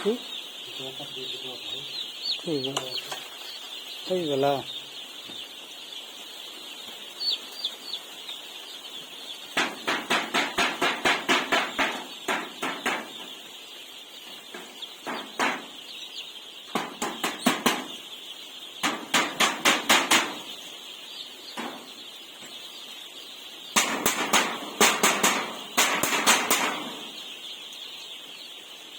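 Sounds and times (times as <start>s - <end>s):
chickens cheeping: 0.0s - 28.9s
quick sharp knocks: 9.6s - 13.4s, 18.8s - 20.5s, 23.8s - 27.2s.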